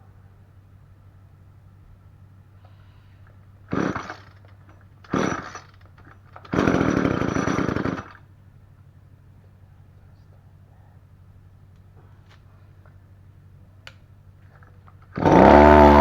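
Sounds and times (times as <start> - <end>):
string trimmer engine bursts: 3.6 - 8.2, 14.9 - 16.0.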